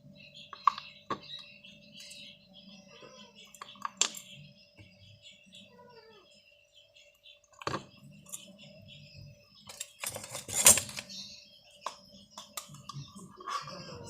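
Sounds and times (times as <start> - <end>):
utensils and dishes clattering: 9.6 - 11.2.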